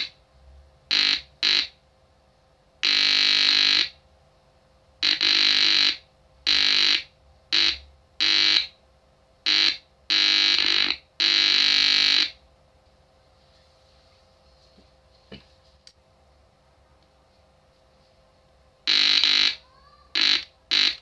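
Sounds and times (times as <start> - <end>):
buzzy distorted speaker tone: 9.5 - 12.4, 18.8 - 21.0.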